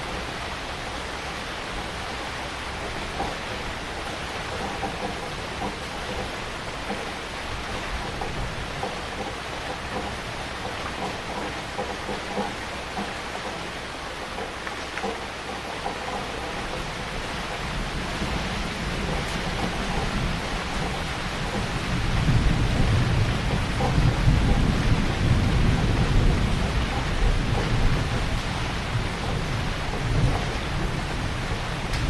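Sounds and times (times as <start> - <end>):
heavy rain falling: 0.0 - 32.0
low rumble of thunder: 16.1 - 32.0.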